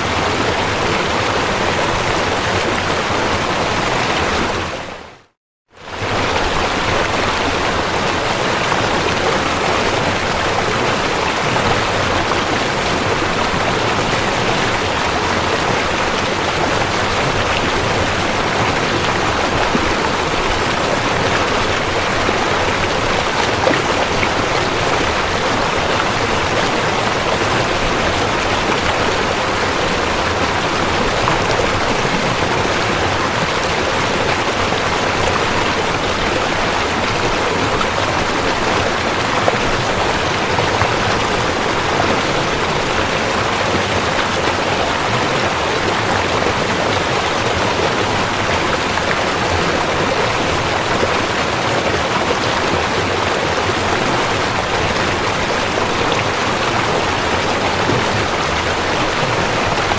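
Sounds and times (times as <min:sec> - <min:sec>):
rushing river water: 0:00.0 - 0:59.9.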